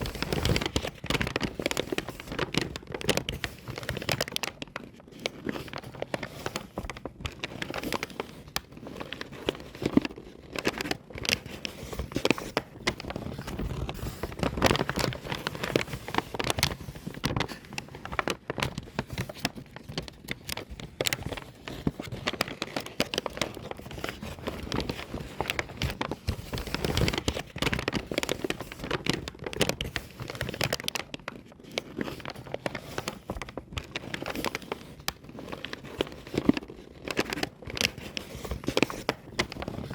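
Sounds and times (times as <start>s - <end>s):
paper bag crumpling: 0.0s - 39.9s.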